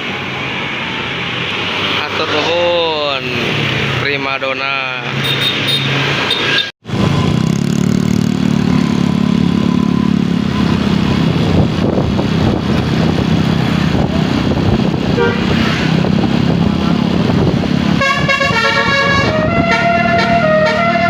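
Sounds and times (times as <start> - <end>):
bus engine droning: 6.9 - 21.0.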